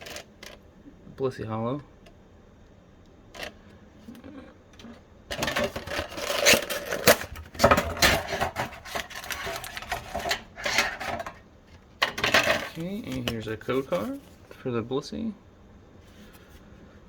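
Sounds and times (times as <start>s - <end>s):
metal tin rattling and clattering: 5.3s - 11.4s, 12.0s - 14.0s.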